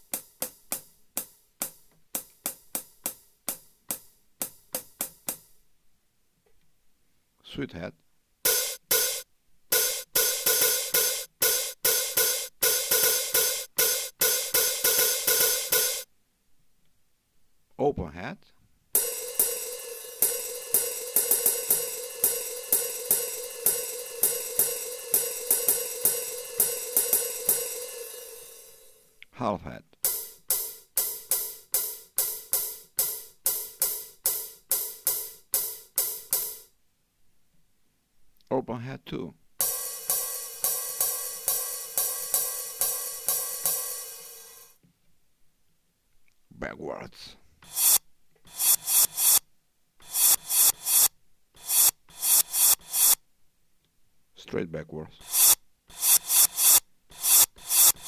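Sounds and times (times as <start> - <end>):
drum machine hi-hat hits: 0.0 - 5.6, 8.5 - 16.1, 19.0 - 29.2, 30.0 - 36.8, 39.6 - 44.8, 47.6 - 49.4, 50.0 - 53.2, 55.2 - 58.0.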